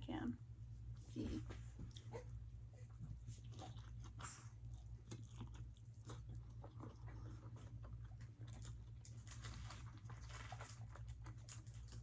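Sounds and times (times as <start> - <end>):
steady low hum: 0.0 - 12.0
person chewing food: 3.3 - 12.0.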